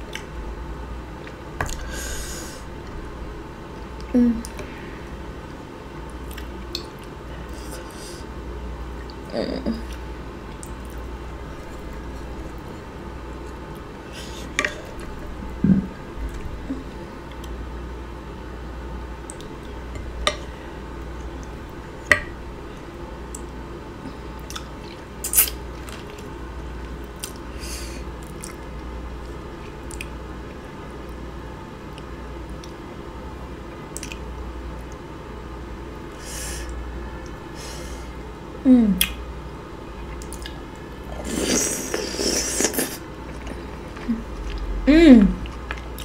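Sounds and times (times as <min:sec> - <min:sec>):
steady low hum: 0:00.0 - 0:46.0
wet chewing and lip-smacking: 0:06.1 - 0:07.2, 0:09.8 - 0:12.7, 0:24.4 - 0:26.3, 0:28.2 - 0:30.7, 0:33.9 - 0:35.0, 0:40.0 - 0:44.7, 0:45.4 - 0:46.0.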